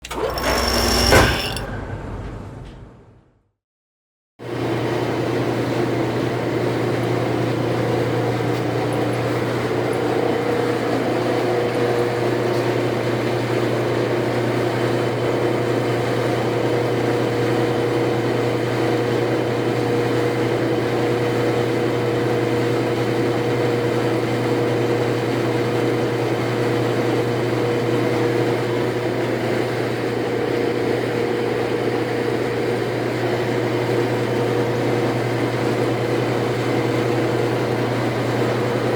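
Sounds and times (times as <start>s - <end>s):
lathe running with steady hum: 0.0s - 1.6s.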